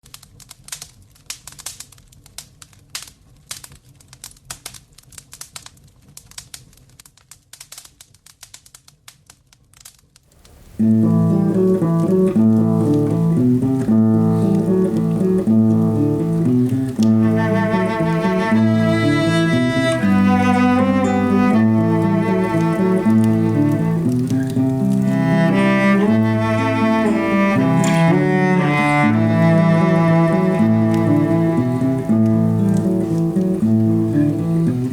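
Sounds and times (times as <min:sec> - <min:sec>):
wood fire crackling: 0:00.0 - 0:34.9
string quartet playing chords: 0:14.5 - 0:33.5.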